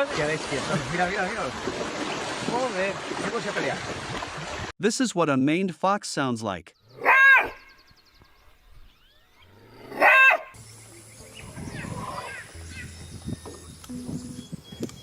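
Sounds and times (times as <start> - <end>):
fox hoarse roar-bark: 7.0 - 7.6, 9.7 - 10.6.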